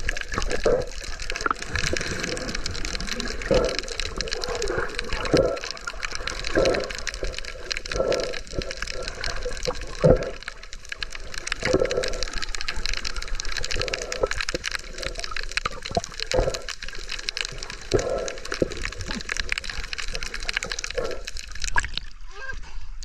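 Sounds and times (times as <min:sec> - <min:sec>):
underwater fizzing bubbles: 0:00.0 - 0:22.2.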